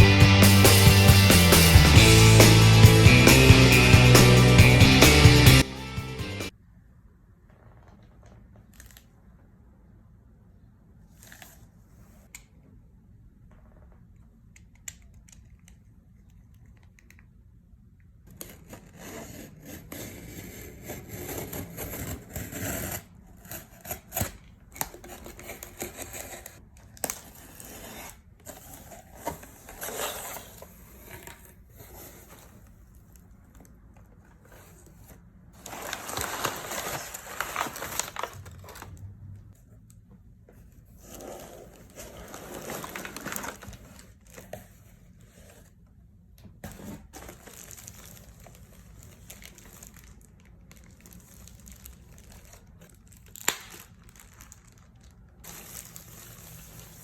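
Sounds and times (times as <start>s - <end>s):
plastic and cardboard rustling: 21.3s - 39.3s, 40.5s - 45.8s, 46.5s - 57.0s.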